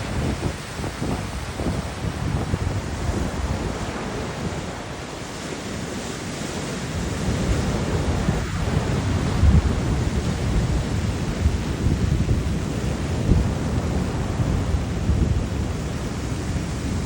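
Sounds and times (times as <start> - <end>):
sea waves washing in: 0.0 - 17.0
wind buffeting microphone: 0.0 - 17.0.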